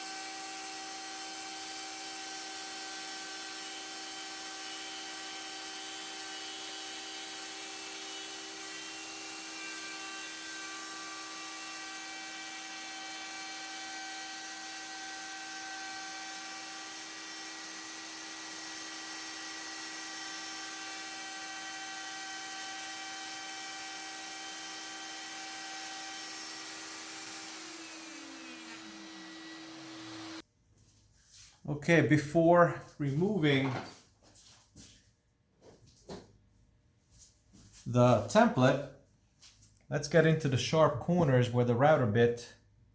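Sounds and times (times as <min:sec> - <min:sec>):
router whining: 0:00.0 - 0:30.4.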